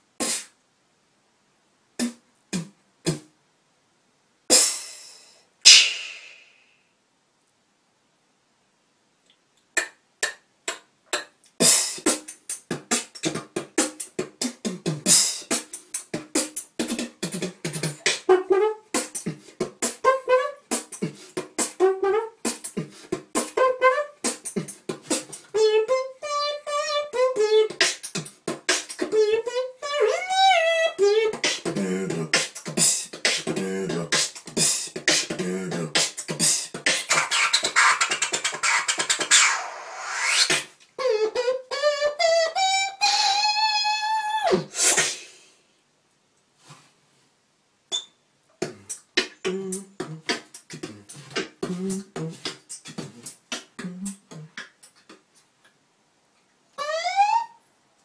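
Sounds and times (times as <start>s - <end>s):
beatboxing mouth percussion: 0.2s - 0.6s, 2.0s - 3.3s, 4.5s - 6.5s, 9.6s - 43.6s, 44.4s - 45.4s, 47.9s - 55.8s
vocal melody lines: 16.8s - 40.3s, 41.0s - 44.7s, 47.9s - 55.2s, 56.8s - 57.6s.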